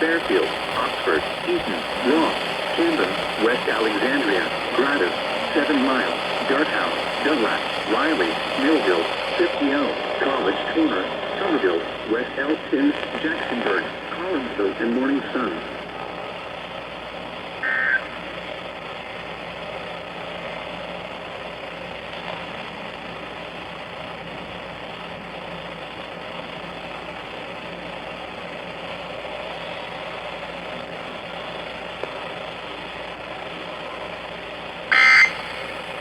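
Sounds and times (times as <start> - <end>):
radio static hiss: 0.0 - 36.0
high electronic burst: 34.9 - 36.0.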